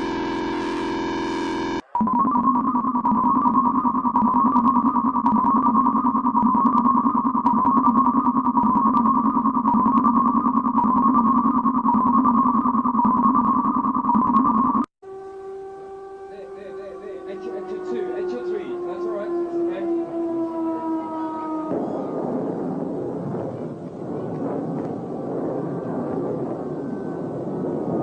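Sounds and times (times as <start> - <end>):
steady alert tone: 0.0 - 4.4
warbling electronic alarm tone: 0.0 - 23.4, 25.0 - 28.0.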